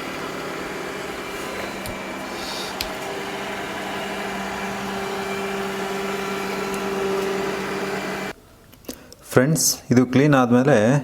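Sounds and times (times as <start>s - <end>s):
robot vacuum motor hum: 0.0s - 8.3s.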